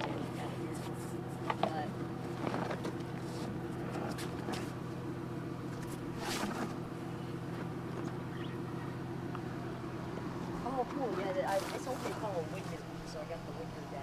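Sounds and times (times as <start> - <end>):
vehicle engine idling: 0.0 - 14.0.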